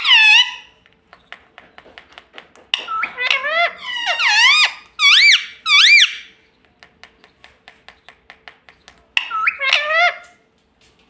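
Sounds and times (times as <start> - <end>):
parrot calling loudly: 0.0 - 0.8, 2.8 - 6.4, 9.2 - 10.4.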